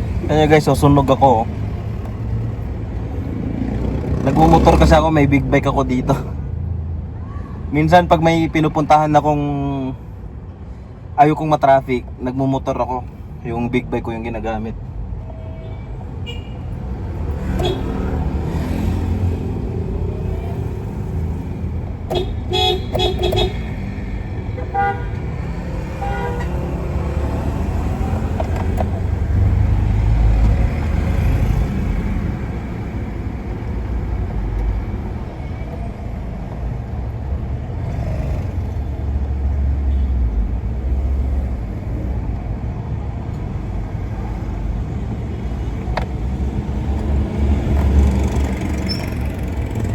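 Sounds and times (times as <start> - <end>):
road traffic rumble: 0.0 - 49.9
vehicle horn toots: 15.3 - 16.6, 17.6 - 18.0, 22.1 - 23.7, 24.6 - 25.2, 26.0 - 26.6.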